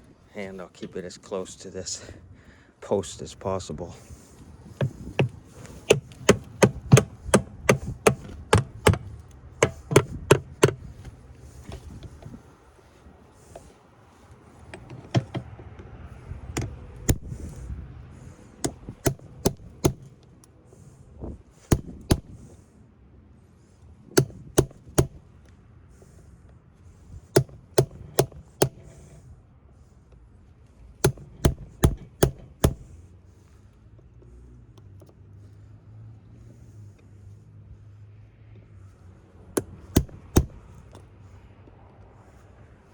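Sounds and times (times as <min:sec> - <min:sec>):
hammer striking chisel: 0:04.8 - 0:10.9, 0:15.0 - 0:15.4, 0:18.6 - 0:20.2, 0:21.6 - 0:22.4, 0:24.2 - 0:25.2, 0:27.3 - 0:29.0, 0:31.0 - 0:32.9, 0:39.6 - 0:40.6.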